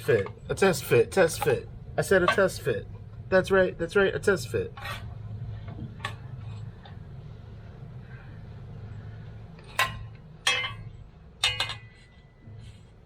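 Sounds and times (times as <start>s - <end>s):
steady low hum: 0.0s - 13.0s
ladder rail clanking on metal rack: 9.8s - 12.0s.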